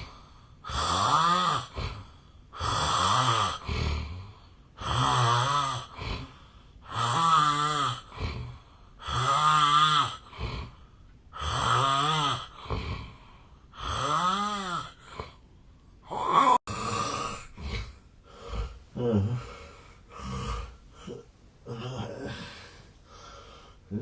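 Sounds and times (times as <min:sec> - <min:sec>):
man snoring heavily: 0:00.0 - 0:10.8, 0:11.4 - 0:15.4, 0:16.1 - 0:22.7
sleeper breathing: 0:16.0 - 0:24.0.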